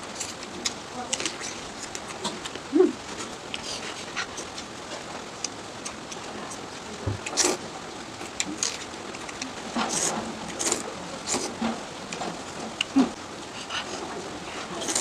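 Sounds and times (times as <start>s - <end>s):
chewing: 8.2s - 15.0s
noodle slurping: 9.8s - 11.6s.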